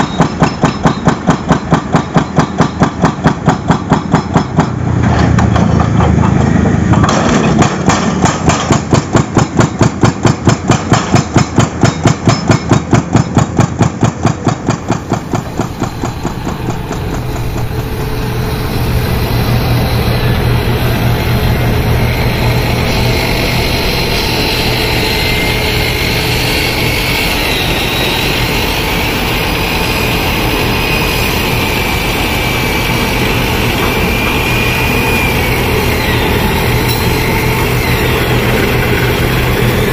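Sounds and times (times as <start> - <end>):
rapid machine pounding: 7.0 - 18.8
steady engine drone: 14.0 - 39.9.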